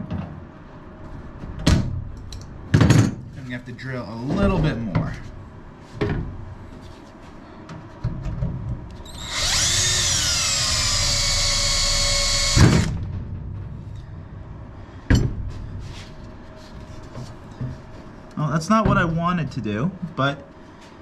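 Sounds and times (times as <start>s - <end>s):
power drill drilling metal: 9.1s - 13.0s.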